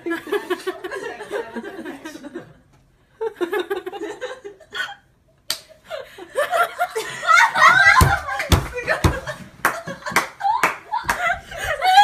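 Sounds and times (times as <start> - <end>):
woman laughing hard: 6.3 - 12.0.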